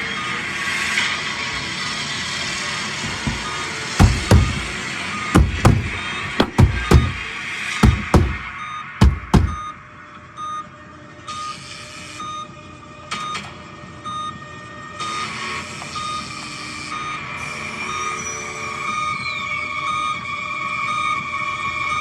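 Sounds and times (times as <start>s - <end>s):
deep heartbeat thumps: 3.1s - 4.7s, 5.4s - 7.2s, 7.8s - 8.4s, 9.0s - 9.6s.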